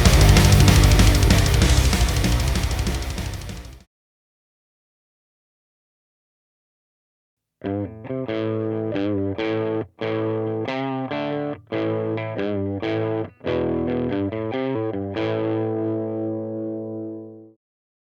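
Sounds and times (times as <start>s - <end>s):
distorted electric guitar chords: 0.0s - 3.8s, 7.7s - 17.5s.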